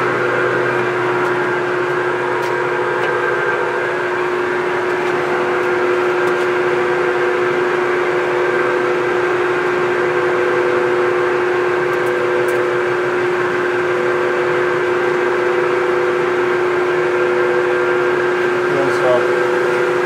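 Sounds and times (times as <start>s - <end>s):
lathe mechanical whir: 0.0s - 20.0s.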